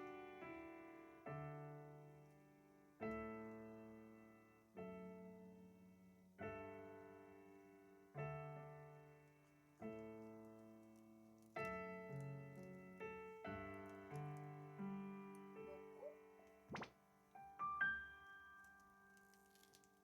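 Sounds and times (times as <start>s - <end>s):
brief sharp sound: 16.7s - 16.9s.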